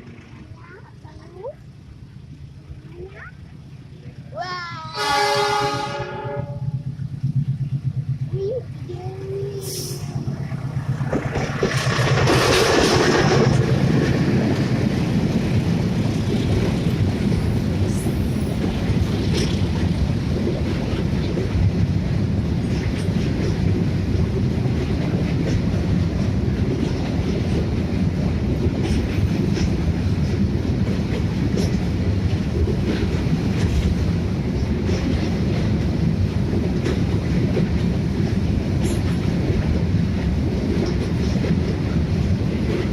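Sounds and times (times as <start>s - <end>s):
freight train rumbling past: 0.0s - 42.9s
wheel clicks over rail joints: 10.6s - 14.8s, 18.5s - 21.8s.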